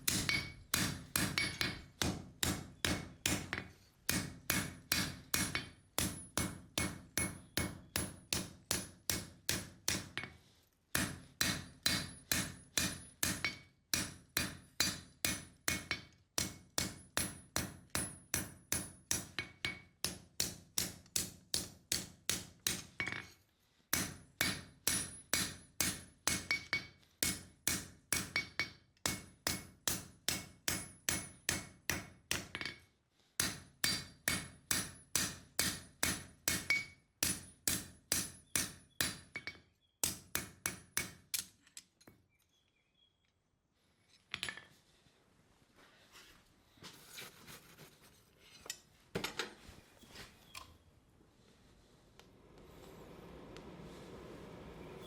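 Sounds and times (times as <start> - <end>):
hammer striking steel on anvil: 0.0 - 10.3, 11.0 - 23.2, 23.9 - 32.8, 33.4 - 41.5.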